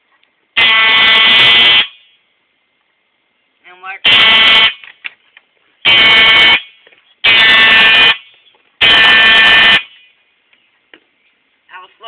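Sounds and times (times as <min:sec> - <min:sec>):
fire alarm horn blasts: 0:00.6 - 0:02.0, 0:04.0 - 0:04.8, 0:05.8 - 0:10.0.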